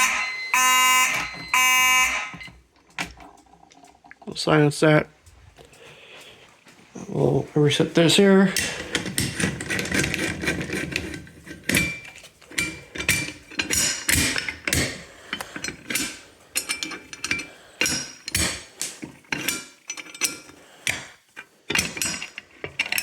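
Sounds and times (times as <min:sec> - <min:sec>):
metallic clicks and clanks: 0:08.5 - 0:23.0.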